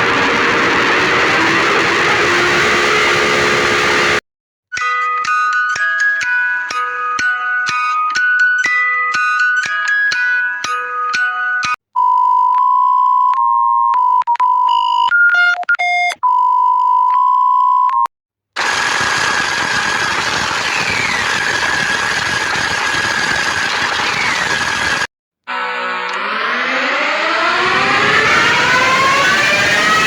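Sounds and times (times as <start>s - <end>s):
high beep tone: 14.0s - 18.1s
short falling tones: 25.6s - 30.0s.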